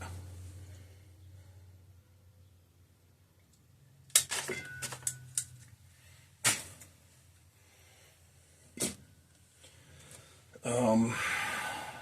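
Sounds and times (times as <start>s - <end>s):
tools clicking and rattling: 4.1s - 5.7s.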